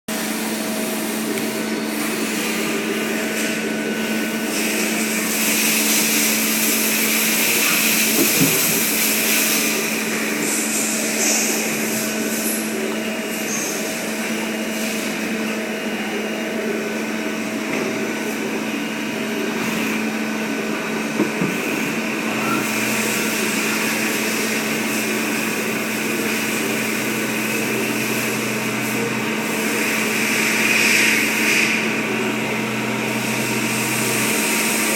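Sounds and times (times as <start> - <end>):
lathe mechanical hum: 0.1 - 34.9
hiss: 4.5 - 12.6.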